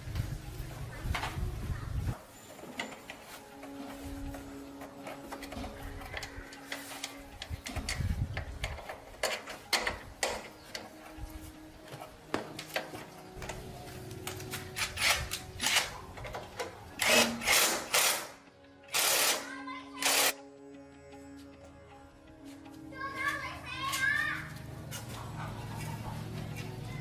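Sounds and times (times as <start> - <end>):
tools clicking and clacking: 2.5 - 11.0, 14.2 - 19.4.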